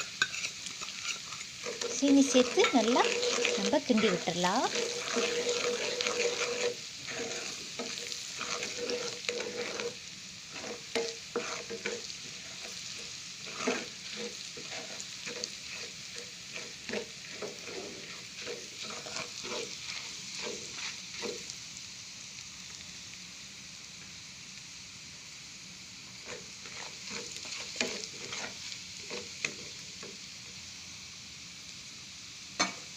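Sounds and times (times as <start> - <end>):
spatula stirring and scraping pan: 0.0 - 21.8, 26.1 - 30.3
food sizzling in butter: 0.0 - 32.9.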